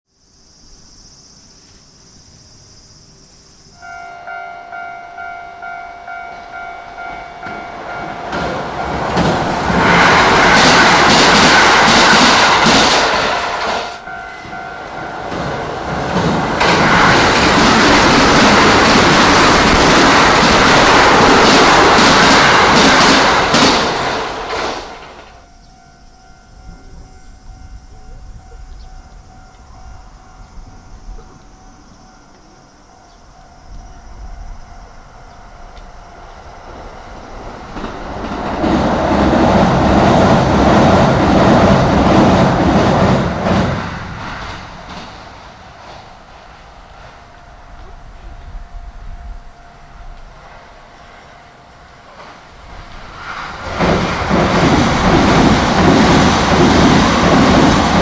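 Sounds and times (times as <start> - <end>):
train wheels on track: 3.7 - 58.0
level crossing bell ringing: 3.8 - 9.0
rail joint clatter: 7.4 - 25.4, 52.1 - 58.0.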